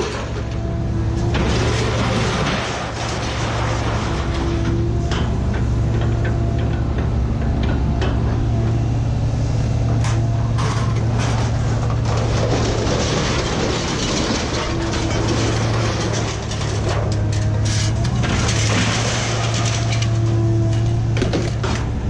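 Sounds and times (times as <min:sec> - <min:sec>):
large engine running: 0:00.0 - 0:22.0.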